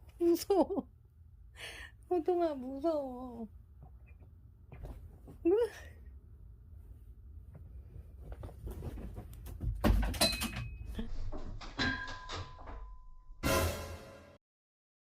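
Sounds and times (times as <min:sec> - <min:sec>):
metallic clang ringing: 0:11.8 - 0:14.2.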